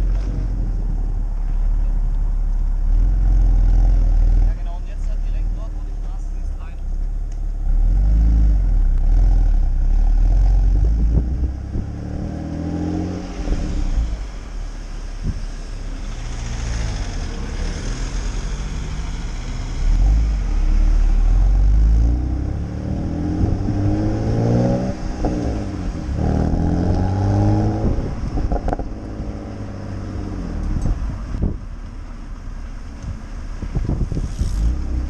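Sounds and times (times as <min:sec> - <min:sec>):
car exhaust revving: 0:00.0 - 0:35.0
exhaust cracks: 0:24.9 - 0:35.0.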